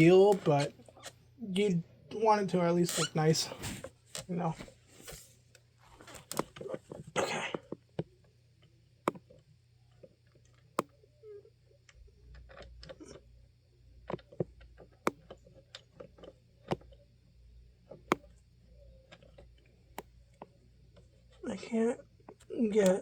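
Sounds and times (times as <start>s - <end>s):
plastic fan guard clicking: 6.2s - 6.6s, 18.1s - 18.3s.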